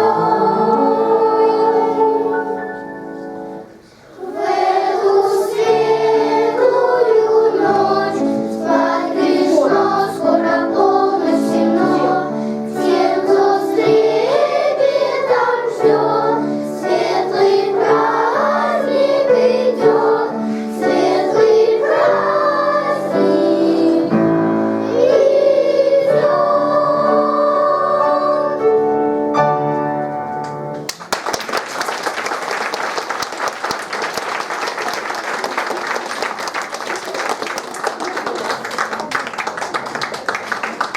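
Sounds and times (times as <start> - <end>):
children's choir singing: 0.0 - 29.8
audience applause: 30.9 - 40.9.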